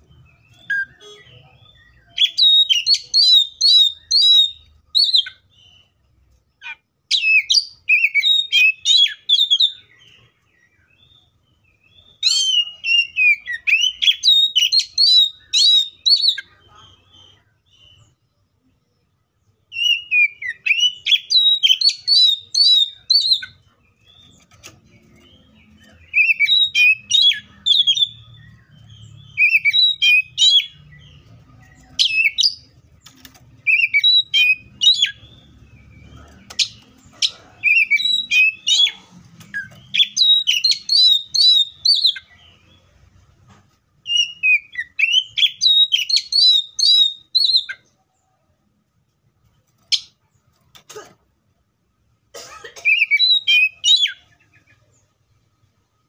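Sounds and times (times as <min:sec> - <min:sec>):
bird singing whistled phrases: 0:00.4 - 0:05.5, 0:07.1 - 0:09.9, 0:12.0 - 0:16.5, 0:19.7 - 0:23.6, 0:26.1 - 0:31.1, 0:33.6 - 0:35.8, 0:37.6 - 0:39.0, 0:39.6 - 0:42.3, 0:44.0 - 0:47.8, 0:52.9 - 0:54.3.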